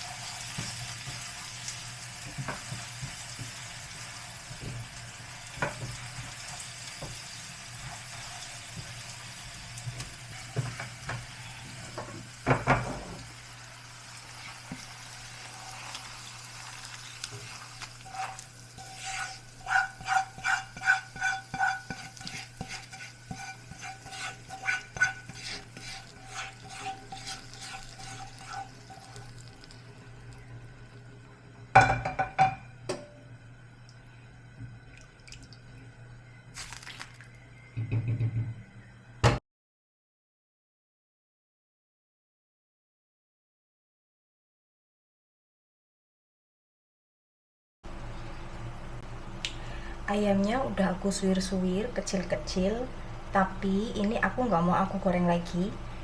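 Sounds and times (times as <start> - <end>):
spice paste sizzling in pan: 0.0 - 30.4, 36.5 - 37.3
spatula scraping and tapping pan: 14.4 - 15.0, 16.9 - 29.3.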